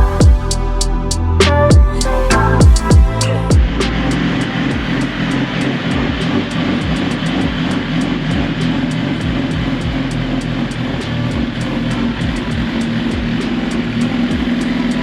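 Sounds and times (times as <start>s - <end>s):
music with guitar and beat: 0.0s - 10.1s.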